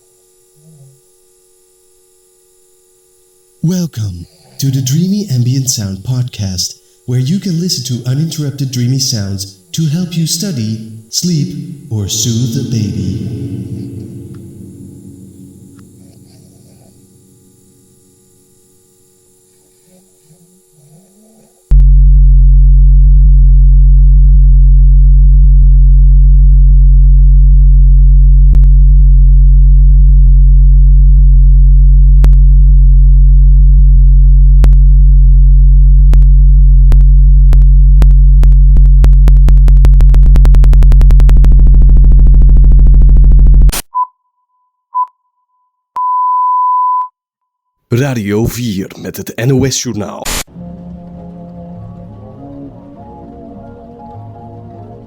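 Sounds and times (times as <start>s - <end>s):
faint hum: 0.0s - 43.8s, 47.8s - 55.0s
loud low electronic drone: 3.6s - 19.5s, 21.8s - 43.7s
accelerating clicks: 50.3s - 55.0s.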